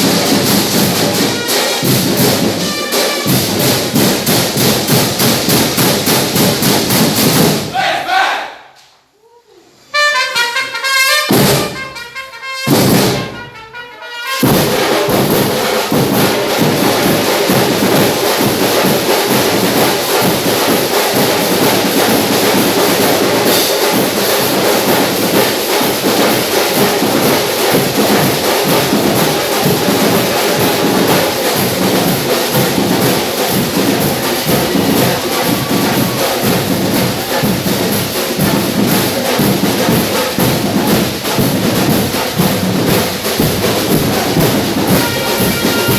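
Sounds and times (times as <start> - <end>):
dense drum beat: 0.0 - 7.8, 11.3 - 13.6, 14.4 - 45.9
marching band playing brass: 0.0 - 8.5, 9.9 - 45.9
short horn blasts: 2.6 - 3.4, 10.0 - 14.5, 44.9 - 45.9.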